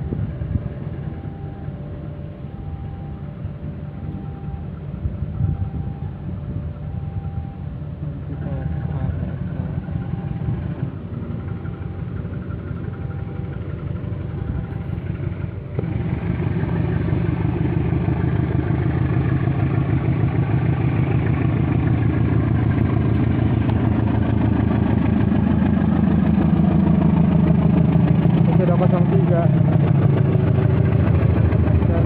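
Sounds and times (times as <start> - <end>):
diesel train engine rumbling: 0.0 - 32.0.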